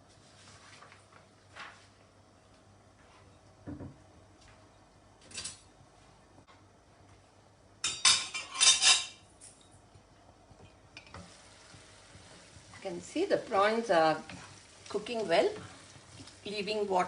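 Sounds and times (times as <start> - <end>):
metal cookware clattering: 7.8 - 9.6.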